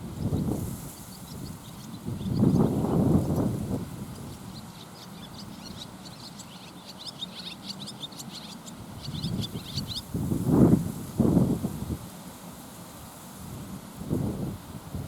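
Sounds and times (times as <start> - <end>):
wind buffeting microphone: 0.0 - 4.6, 8.9 - 12.1, 13.5 - 15.0
bird chirping rapidly: 4.1 - 10.1.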